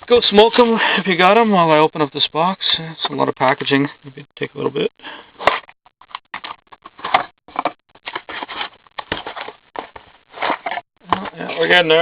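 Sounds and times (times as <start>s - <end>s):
card box packaging rustling and tearing: 8.0s - 11.8s.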